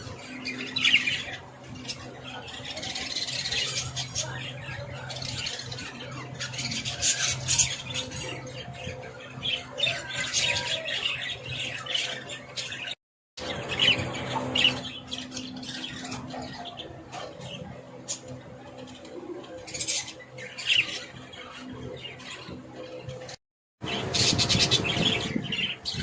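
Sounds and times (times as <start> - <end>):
parrots squawking and chirping: 0.2 - 23.0, 23.9 - 26.0.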